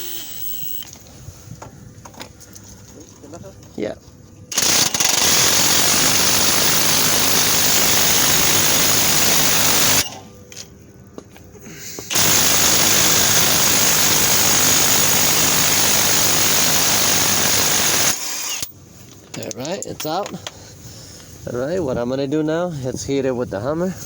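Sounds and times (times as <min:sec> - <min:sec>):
impact wrench hammering: 0:04.5 - 0:10.1, 0:12.1 - 0:18.7.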